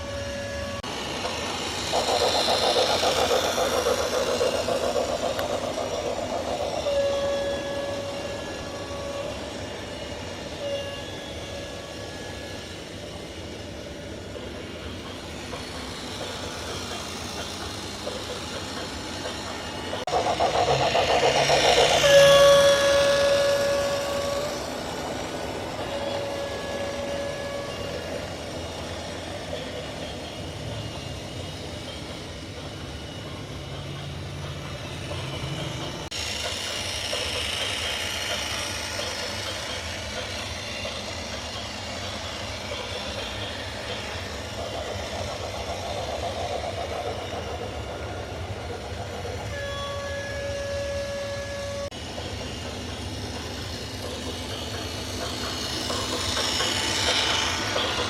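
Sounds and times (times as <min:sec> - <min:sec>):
engine and traffic noise: 0:00.0 - 0:58.0
horn blasts: 0:06.8 - 0:09.6, 0:21.3 - 0:24.8.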